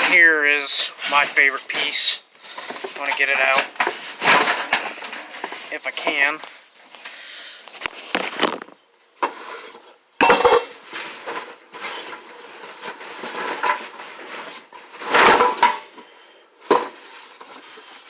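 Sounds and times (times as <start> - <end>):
metal parts knocking and clattering: 1.1 - 5.7, 15.0 - 15.9.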